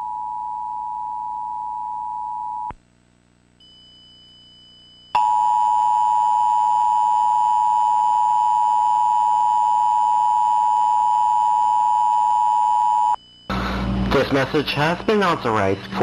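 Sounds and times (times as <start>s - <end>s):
faint high steady tone: 3.6s - 16.0s.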